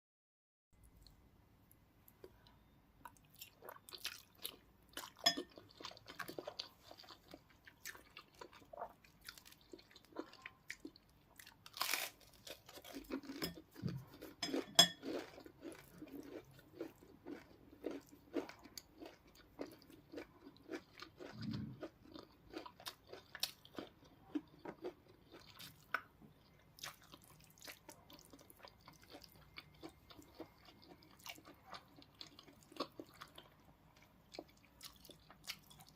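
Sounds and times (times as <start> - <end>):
crunchy bites and chewing: 3.4 - 26.1.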